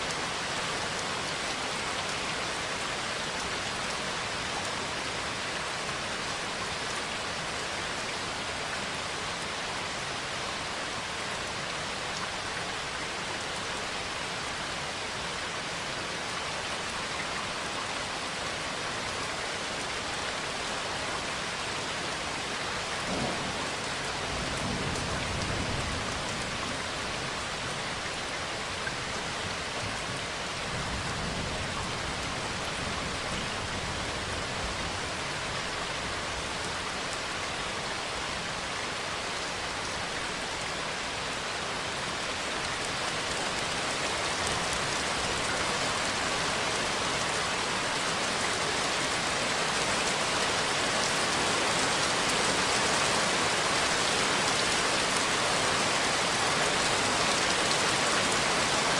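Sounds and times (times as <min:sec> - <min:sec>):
steady rain: 0:00.0 - 0:58.9
thunder rumbling: 0:23.1 - 0:26.3.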